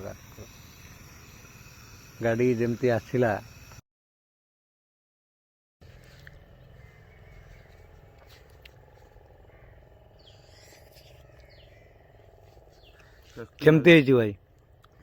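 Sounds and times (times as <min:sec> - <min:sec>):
low steady rumble: 0:05.8 - 0:13.7.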